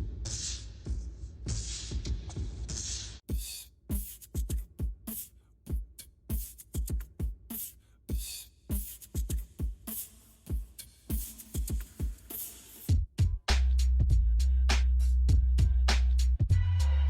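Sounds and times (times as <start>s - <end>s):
deep kick drums: 12.9s - 14.3s.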